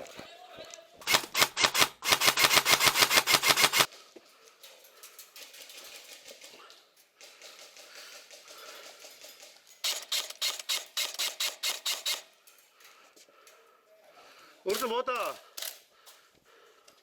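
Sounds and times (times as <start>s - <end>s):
airsoft gun rapid shots: 1.0s - 3.9s, 9.8s - 12.3s
faint rustling and clatter: 3.9s - 9.8s.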